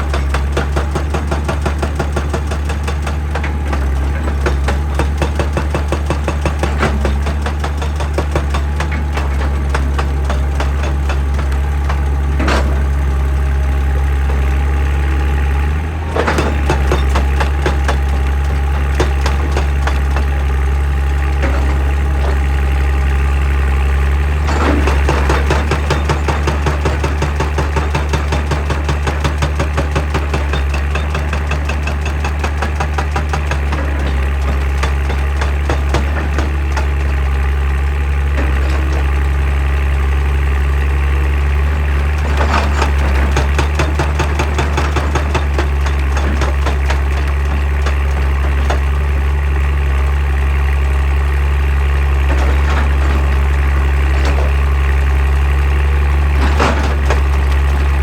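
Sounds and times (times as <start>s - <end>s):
diesel engine running: 0.0s - 58.0s
hydraulic rock breaker hammering: 0.0s - 58.0s
loud clunks: 16.1s - 20.6s, 24.4s - 37.4s, 41.9s - 49.1s, 56.2s - 58.0s.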